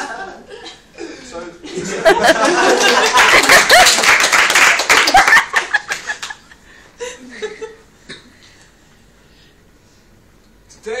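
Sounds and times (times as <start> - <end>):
audience laughing: 1.7 - 4.1, 5.0 - 7.8
audience clapping: 2.4 - 6.4.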